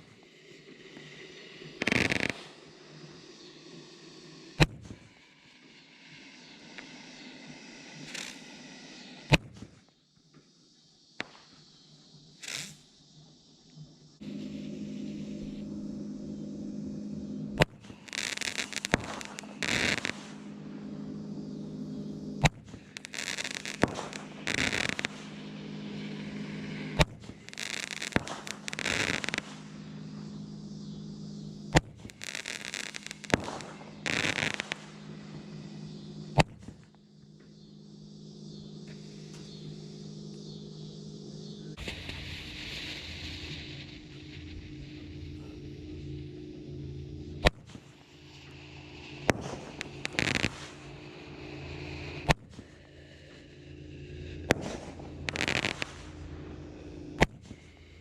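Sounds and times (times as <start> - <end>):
steady low hum: 0.0 - 58.0
firework pops: 4.6 - 5.0, 9.3 - 9.8, 17.6 - 20.4, 22.4 - 25.3, 27.0 - 29.7, 31.7 - 34.9, 36.4 - 36.8, 41.8 - 44.5, 49.2 - 51.0, 52.2 - 52.7, 54.5 - 56.2, 57.2 - 57.6
firework fizzing: 17.6 - 20.4, 22.4 - 25.4, 26.0 - 29.8, 31.7 - 35.0, 41.8 - 45.1, 49.1 - 52.8, 54.5 - 56.2.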